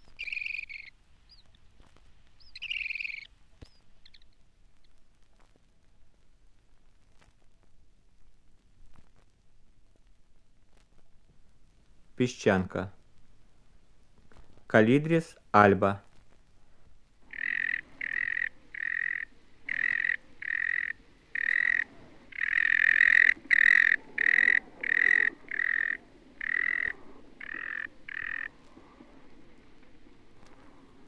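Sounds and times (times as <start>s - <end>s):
bird calling short sharp calls: 0.0s - 1.6s, 2.4s - 4.4s, 17.3s - 28.6s.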